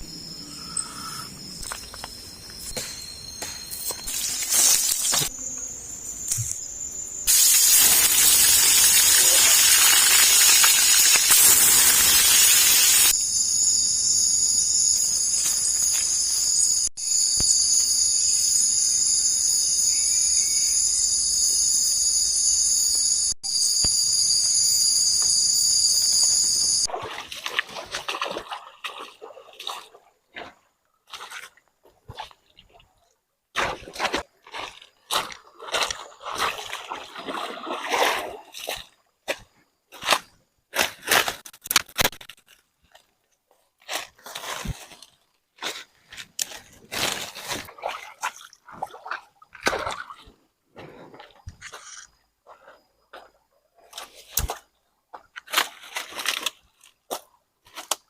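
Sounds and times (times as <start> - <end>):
shrill insect chorus: 0.0 - 26.9
loud rushing hiss: 7.3 - 13.1.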